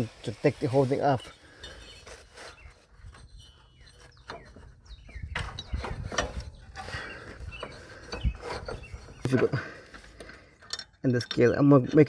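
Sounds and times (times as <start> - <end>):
hand tools clicking and scraping: 0.0 - 11.8.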